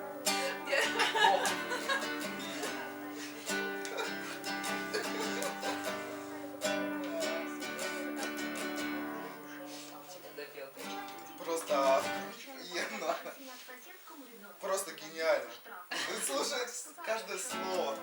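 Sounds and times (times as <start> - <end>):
acoustic guitar strumming: 0.0 - 12.5, 17.2 - 18.0.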